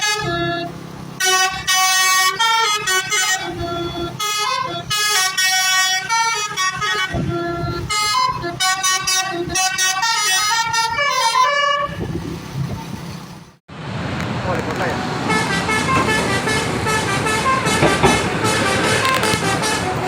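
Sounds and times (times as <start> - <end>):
bus horn playing a tune: 0.0 - 12.2, 15.0 - 20.0
noisy rumble: 0.0 - 20.0.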